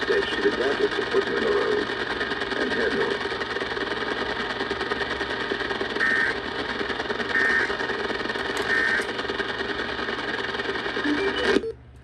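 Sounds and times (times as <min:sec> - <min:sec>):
two-tone warbling data bursts: 0:07.3 - 0:07.7, 0:11.0 - 0:11.8.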